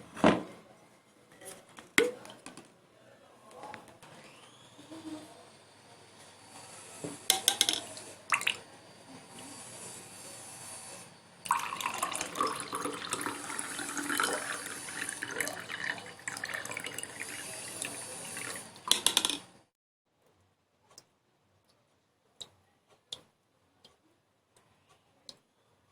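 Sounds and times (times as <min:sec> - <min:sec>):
water running and splashing: 0:11.5 - 0:18.8.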